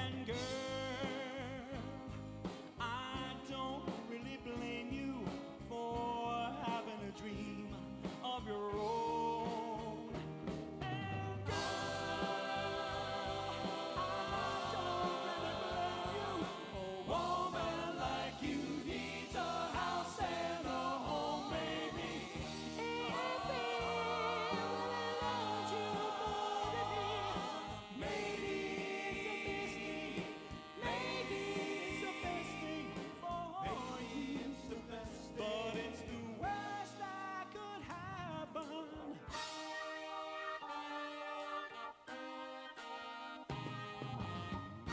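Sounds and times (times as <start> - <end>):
band backing music: 0.0 - 44.9
vocal group singing close harmony: 11.3 - 37.0.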